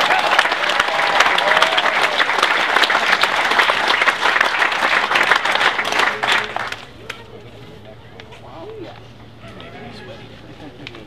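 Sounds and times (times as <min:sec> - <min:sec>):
crowd cheering: 0:00.0 - 0:07.0
crowd clapping: 0:00.0 - 0:07.2.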